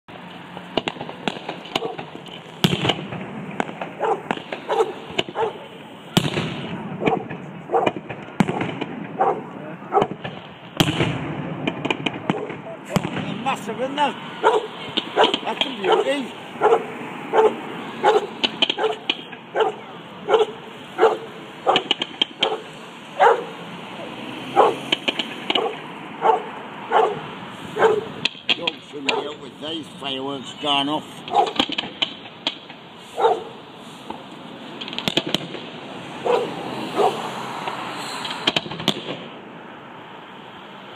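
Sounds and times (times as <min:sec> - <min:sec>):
sharp crackles: 0:00.1 - 0:23.6, 0:24.6 - 0:39.3
fireworks banging: 0:00.1 - 0:39.4
dog barking: 0:01.8 - 0:02.1, 0:04.0 - 0:05.7, 0:07.0 - 0:08.0, 0:09.2 - 0:10.2, 0:12.3 - 0:12.9, 0:14.4 - 0:24.9, 0:25.5 - 0:28.2, 0:29.1 - 0:29.4, 0:31.3 - 0:31.6, 0:33.1 - 0:33.6, 0:36.2 - 0:37.2.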